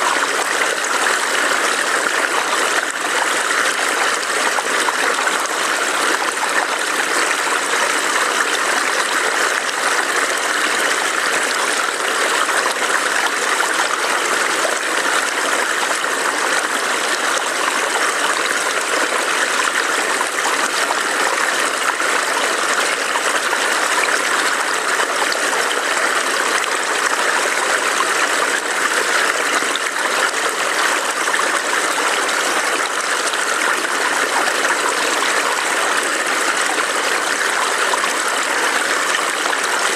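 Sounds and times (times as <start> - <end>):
stream burbling over rocks: 0.0 - 39.9.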